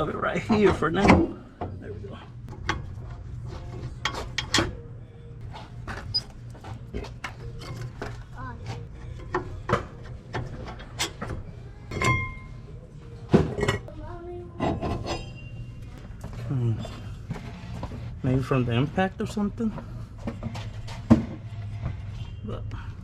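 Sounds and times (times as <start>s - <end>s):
metal tools clinking and scraping: 14.6s - 16.0s.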